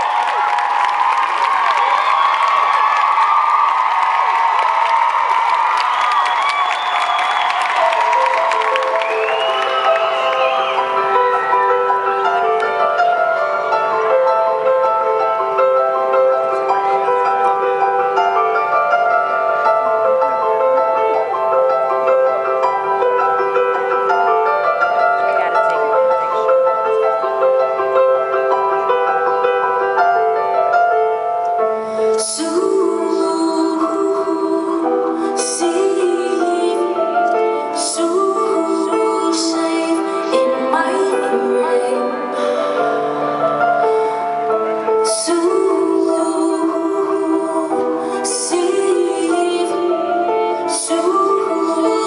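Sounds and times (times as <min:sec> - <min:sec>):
piano chords: 0:00.0 - 0:52.0
woman singing: 0:32.1 - 0:44.3, 0:45.0 - 0:52.0.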